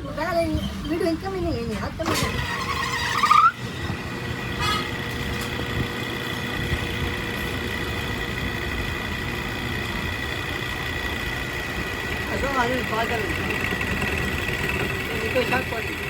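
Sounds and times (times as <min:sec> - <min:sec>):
short rising squeal: 0:02.2 - 0:04.0
machine running with high whine: 0:02.2 - 0:16.0.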